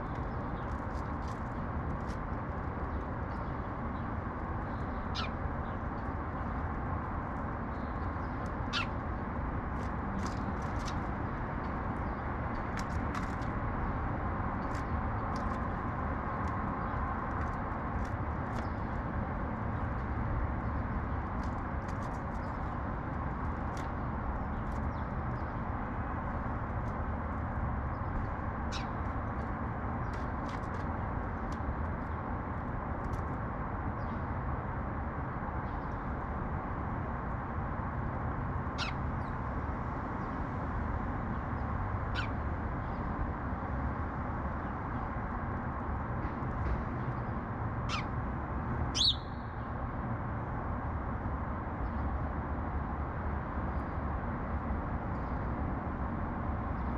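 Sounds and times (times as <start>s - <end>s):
city traffic hum: 0.0s - 56.9s
sparrows chirping: 2.8s - 14.0s, 17.9s - 19.1s, 23.6s - 26.5s, 27.7s - 32.1s, 38.8s - 39.4s, 41.5s - 43.1s, 47.9s - 48.2s, 48.8s - 49.6s.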